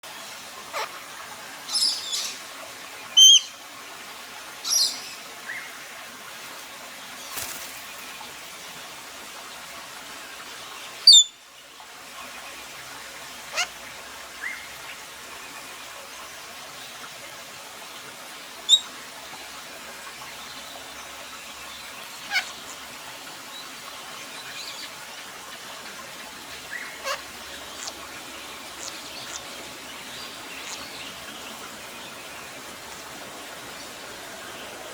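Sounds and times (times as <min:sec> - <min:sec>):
steady background hiss: 0:00.1 - 0:34.9
parrot high-pitched calls: 0:00.7 - 0:01.0, 0:03.2 - 0:03.6, 0:11.0 - 0:11.4, 0:13.5 - 0:13.8, 0:18.7 - 0:18.9, 0:22.2 - 0:22.6, 0:26.7 - 0:28.0.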